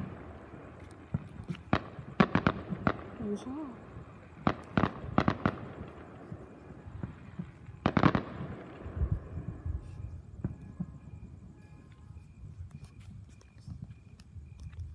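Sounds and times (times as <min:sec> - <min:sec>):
low firework thuds: 0:00.0 - 0:11.2
fireworks bangs: 0:00.0 - 0:11.6.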